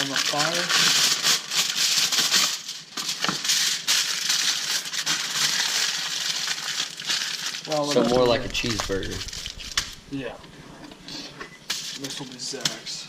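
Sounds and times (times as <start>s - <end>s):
aluminium foil crinkling: 0.0s - 7.8s.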